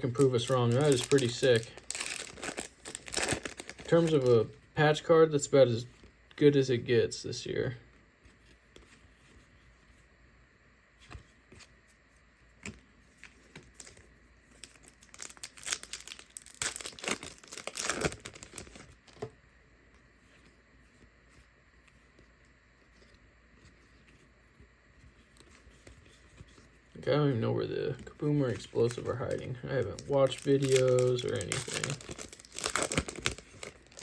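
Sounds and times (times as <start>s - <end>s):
card pack wrapper crinkling and tearing: 0.0s - 4.5s, 12.6s - 19.3s, 28.2s - 34.0s.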